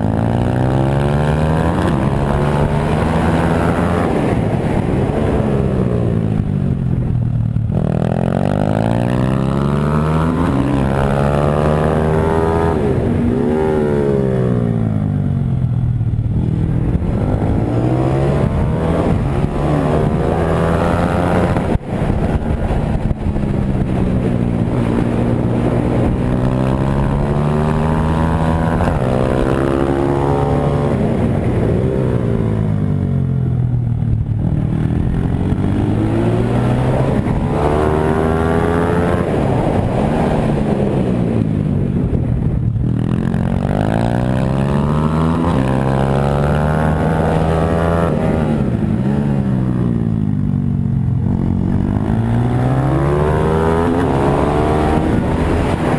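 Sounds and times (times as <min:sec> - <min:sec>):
pit bike engine revving: 0:51.0 - 0:55.9.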